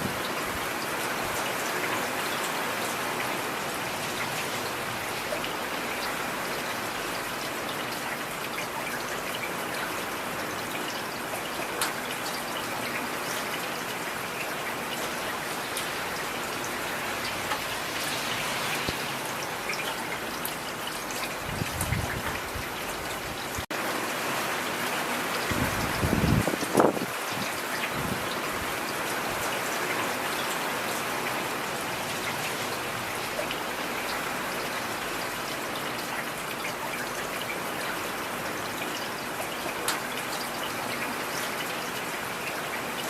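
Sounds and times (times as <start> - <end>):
heavy rain: 0.0 - 43.0
raindrops ticking close by: 0.1 - 23.9.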